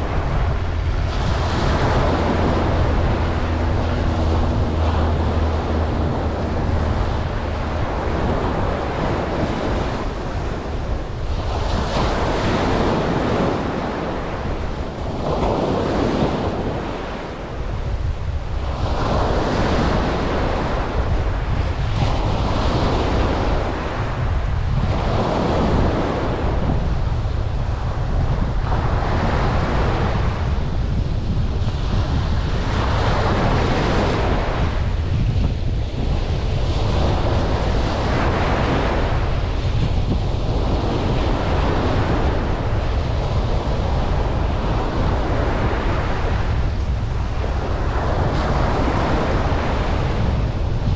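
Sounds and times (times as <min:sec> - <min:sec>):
ocean waves breaking: 0:00.0 - 0:50.9
wind rumble on microphone: 0:00.0 - 0:50.9.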